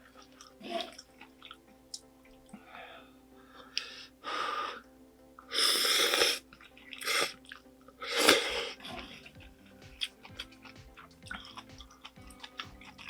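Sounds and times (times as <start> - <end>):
noodles being slurped: 5.6 - 9.2.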